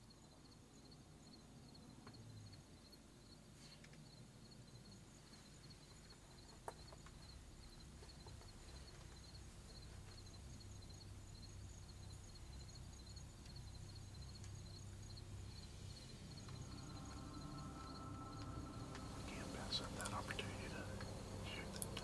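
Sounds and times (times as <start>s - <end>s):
insects chirping: 0.0s - 22.0s
high pulsing trill: 16.0s - 22.0s.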